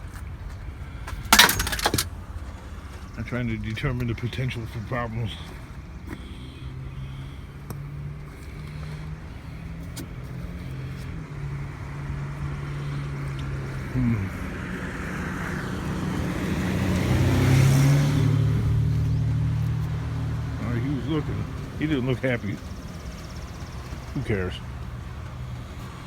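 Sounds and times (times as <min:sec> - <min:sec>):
steady engine hum: 0:00.0 - 0:26.0
car engine passing by: 0:06.2 - 0:26.0.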